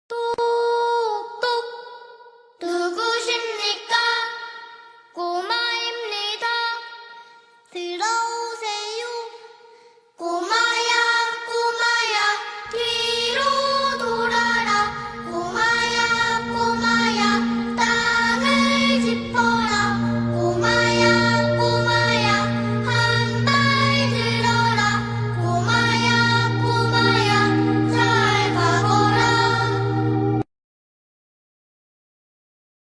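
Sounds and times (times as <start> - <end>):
high singing voice: 10.2 - 30.4.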